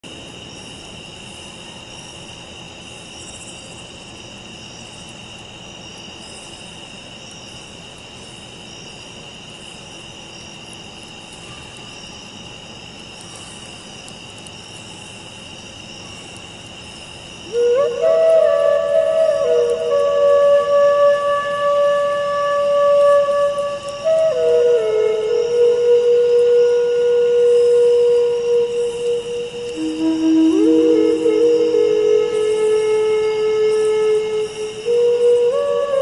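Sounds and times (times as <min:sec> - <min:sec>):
insects trilling: 0:00.0 - 0:36.0
fast pulsing insect calls: 0:00.1 - 0:36.0
flute note: 0:17.4 - 0:36.0.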